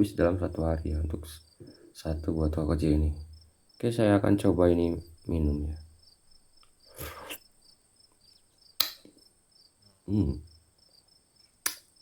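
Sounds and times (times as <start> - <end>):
faint high chirping: 0.0 - 12.0
man slurping: 6.9 - 7.4
throat hum: 6.9 - 7.4, 10.1 - 10.5
sharp click: 8.8 - 9.1, 11.6 - 11.9.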